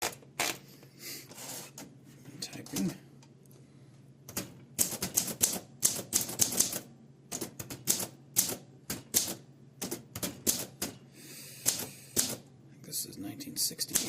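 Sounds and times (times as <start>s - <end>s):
typewriter key clacks: 7.4s - 11.0s.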